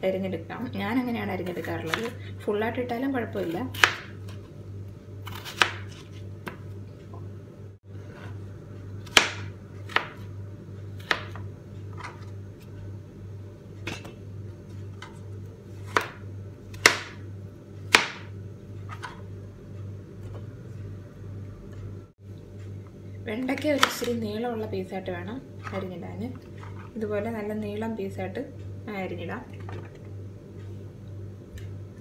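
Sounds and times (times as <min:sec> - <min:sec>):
steady low hum: 0:00.0 - 0:32.0
knife chopping vegetables on board: 0:03.7 - 0:04.1, 0:05.2 - 0:06.6, 0:09.0 - 0:10.2, 0:11.0 - 0:12.2, 0:15.8 - 0:17.2, 0:17.9 - 0:18.3.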